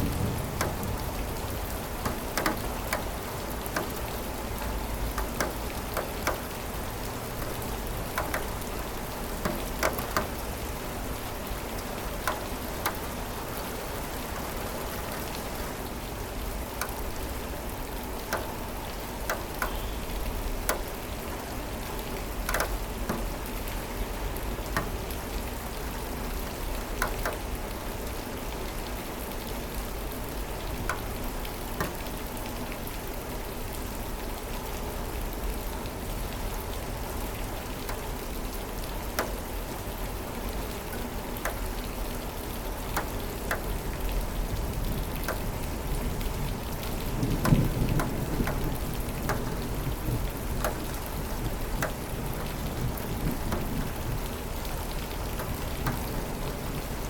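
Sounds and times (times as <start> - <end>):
thunder rumble: 0.0 - 2.7
raindrops ticking: 0.0 - 57.0
steady rain: 0.0 - 57.0.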